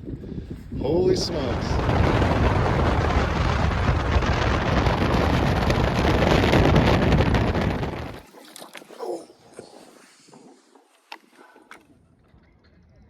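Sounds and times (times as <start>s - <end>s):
wind buffeting microphone: 0.0s - 8.2s
boat engine rumble: 0.8s - 8.2s.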